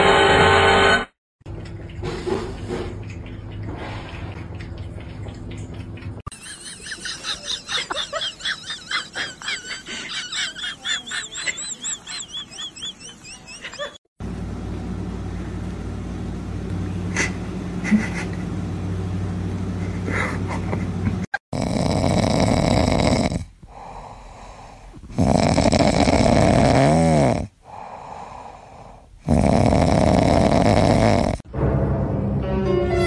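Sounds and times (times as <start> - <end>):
pet snoring: 21.5 - 31.4.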